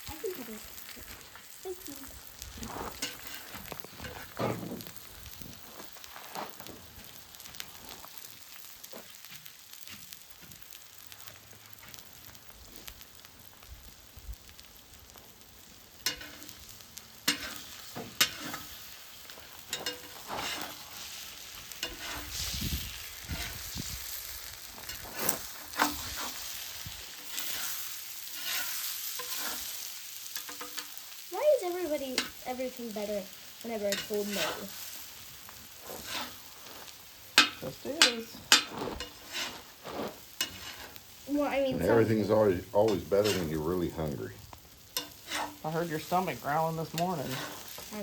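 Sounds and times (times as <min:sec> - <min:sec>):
eggs sizzling in a pan: 0:00.0 - 0:48.0
utensil scraping a pan: 0:02.6 - 0:04.9, 0:16.0 - 0:16.5, 0:17.2 - 0:31.0, 0:33.8 - 0:34.8, 0:35.8 - 0:41.1, 0:42.0 - 0:43.8, 0:44.9 - 0:48.0.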